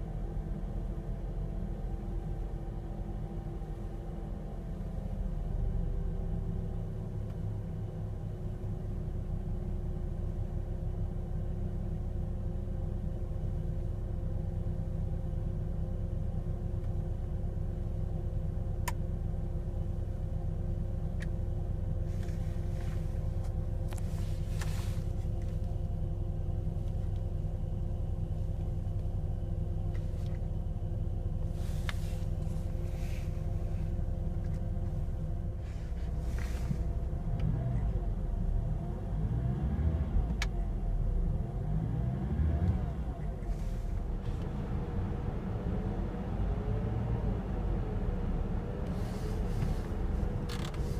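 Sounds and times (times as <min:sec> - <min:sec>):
car engine idling: 0:00.0 - 0:39.0.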